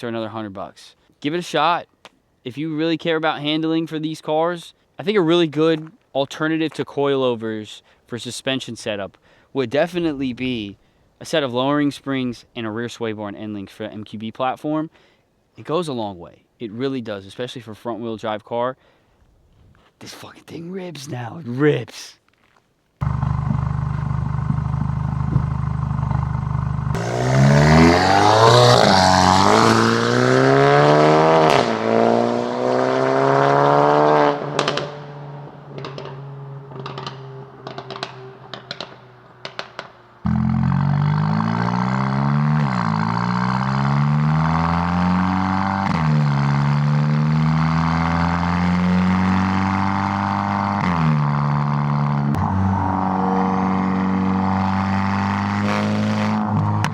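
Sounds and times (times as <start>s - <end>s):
sharp exhaust pops: 23.0s - 29.9s, 34.3s - 52.5s, 54.5s - 56.9s
car engine accelerating through gears: 23.0s - 56.9s.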